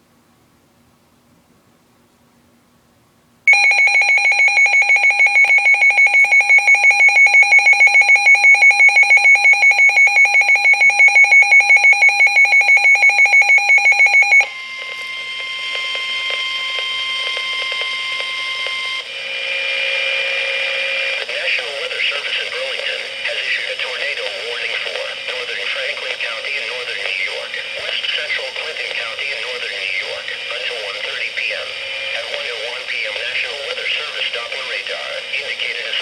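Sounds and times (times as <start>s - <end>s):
pulsing electronic alarm tone: 3.5s - 19.0s
steady warning tone: 3.5s - 36.0s.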